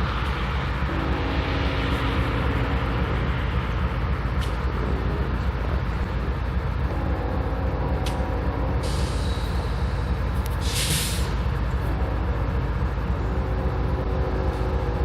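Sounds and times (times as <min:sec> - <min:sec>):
faint steady tones: 0:00.0 - 0:10.6, 0:11.4 - 0:15.0
diesel locomotives rumbling: 0:00.0 - 0:15.0
hiss: 0:10.6 - 0:11.4.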